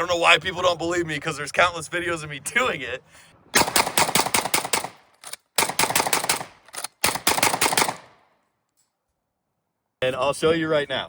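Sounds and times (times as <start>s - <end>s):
rapid gunfire bursts: 3.6s - 8.2s.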